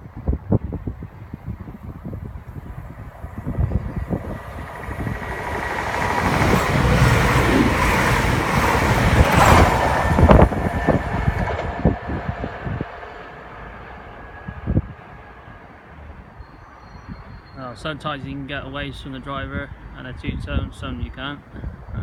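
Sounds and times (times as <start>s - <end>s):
diesel passenger train passing: 1.0s - 20.2s
sharp knocks of train wheels: 3.2s - 15.3s.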